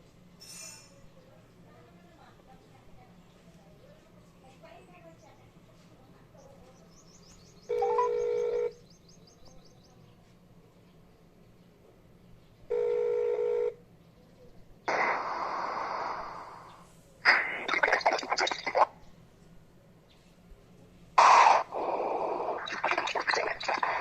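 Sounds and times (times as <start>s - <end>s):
telephone ringback tone: 7.7s - 8.7s, 12.7s - 13.8s
crackling line noise: 14.9s - 18.9s, 21.2s - 24.0s
static hiss: 14.9s - 18.9s, 21.2s - 24.0s.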